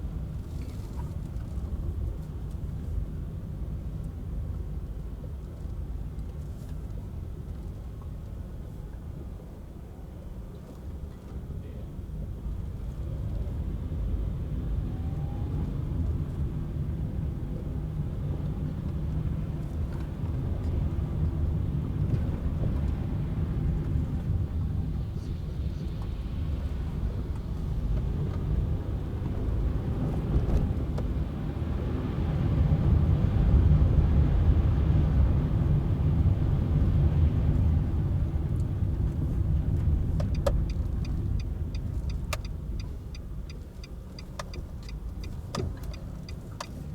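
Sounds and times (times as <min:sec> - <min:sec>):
car engine and road noise: 0:00.0 - 0:46.9
turn signal clicking: 0:39.8 - 0:46.9.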